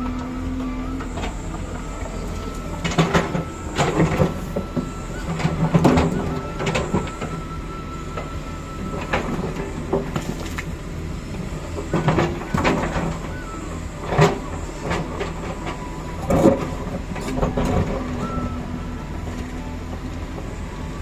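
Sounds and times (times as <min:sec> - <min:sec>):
excavator diesel engine: 0:00.0 - 0:21.0
hydraulic whine: 0:00.0 - 0:21.0.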